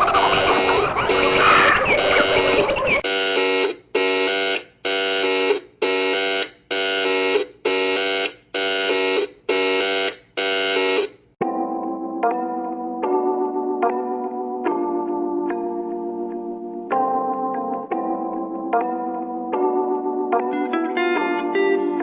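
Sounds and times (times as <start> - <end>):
noisy jumble: 0.0 - 3.0
buzzy electronic alert beeps: 0.0 - 11.1.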